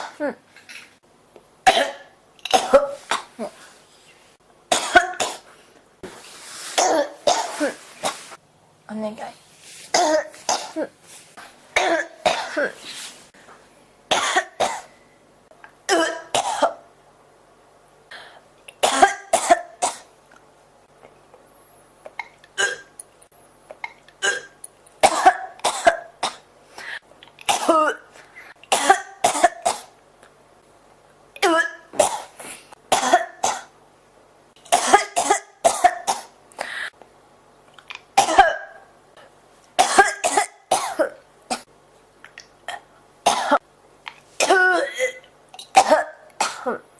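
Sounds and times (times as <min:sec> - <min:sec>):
person coughing: 0:01.7 - 0:03.6, 0:04.7 - 0:05.5, 0:06.8 - 0:08.2, 0:09.9 - 0:11.0, 0:11.8 - 0:12.8, 0:15.9 - 0:16.8, 0:22.2 - 0:22.9, 0:23.8 - 0:29.9, 0:34.7 - 0:36.9, 0:38.2 - 0:38.8, 0:39.8 - 0:41.6, 0:44.4 - 0:46.9.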